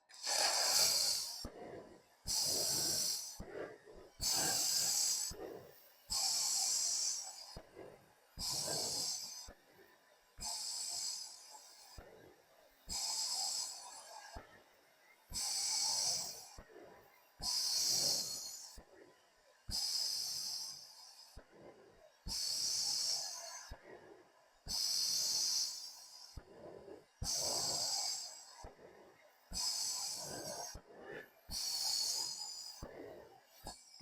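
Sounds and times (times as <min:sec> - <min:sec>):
hissing breaths: 0:00.1 - 0:01.6, 0:02.2 - 0:07.8, 0:24.7 - 0:26.6, 0:27.2 - 0:34.0.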